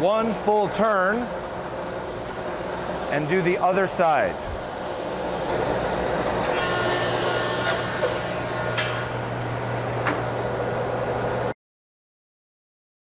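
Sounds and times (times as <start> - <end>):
thickness planer humming and whining: 0.0 - 11.6.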